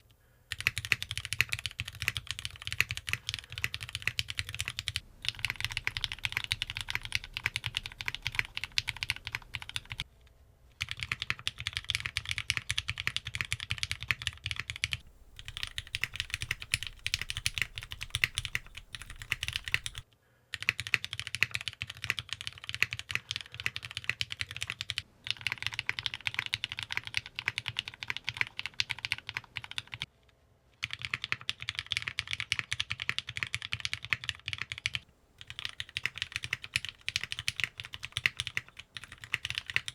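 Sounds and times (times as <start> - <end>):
background hum: 0.0 - 12.9, 15.0 - 20.0
fast mechanical keyboard typing: 0.5 - 10.0, 10.8 - 20.0, 20.6 - 30.1, 30.8 - 39.9.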